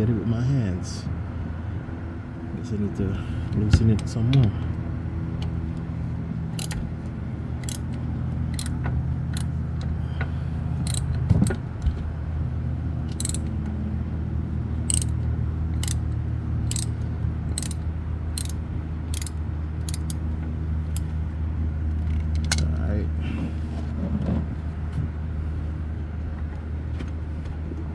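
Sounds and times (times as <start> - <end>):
steady low hum: 0.0 - 27.9
ratchet wrench clicking: 6.5 - 6.8, 7.6 - 9.6, 10.8 - 11.2, 13.1 - 13.6, 14.9 - 20.2.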